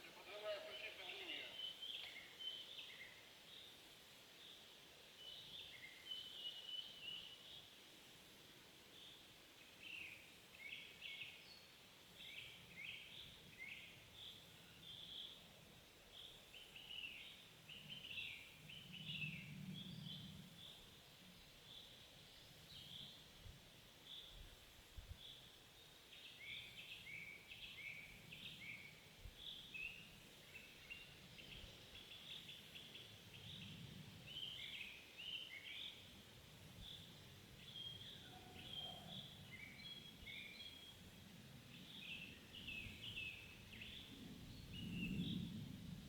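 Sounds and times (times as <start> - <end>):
small birds chirping: 0.0 - 3.8.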